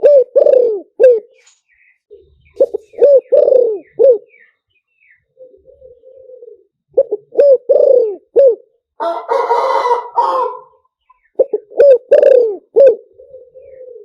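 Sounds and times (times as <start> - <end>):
dove cooing: 0.0 - 1.4, 2.1 - 14.0
rooster crowing: 9.0 - 10.8.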